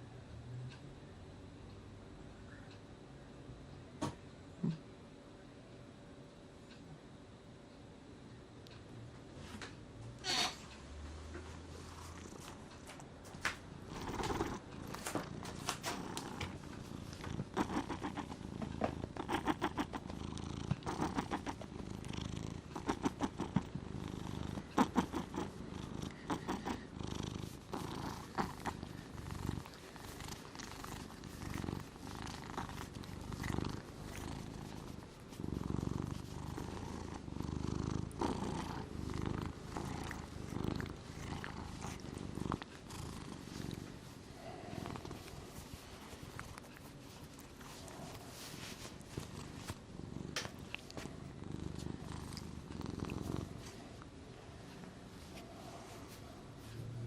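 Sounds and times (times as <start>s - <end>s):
cat snoring: 13.9s - 45.6s, 47.6s - 53.7s.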